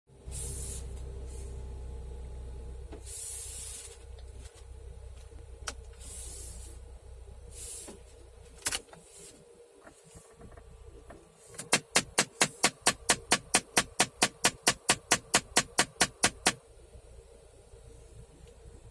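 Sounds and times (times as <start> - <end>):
short hisses: 0.3 - 1.6, 3.0 - 4.0
actuator clicks: 11.6 - 16.6
rapid motor knocking: 11.7 - 16.6.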